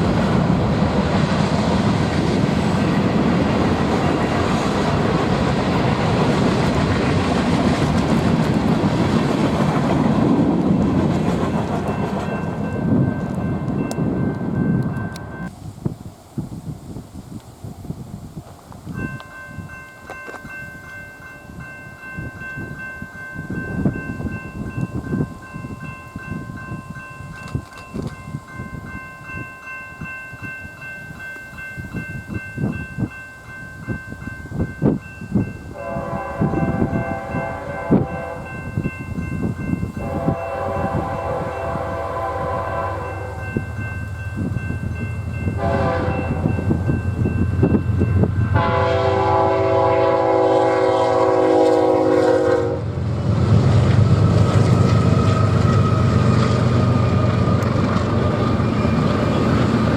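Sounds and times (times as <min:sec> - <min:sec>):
train rumble: 0:00.0 - 0:59.9
crossing bell ringing: 0:01.8 - 0:15.5, 0:18.9 - 0:59.9
locomotive horn blasts: 0:35.7 - 0:38.7, 0:40.0 - 0:43.6, 0:45.5 - 0:46.7, 0:48.5 - 0:53.0.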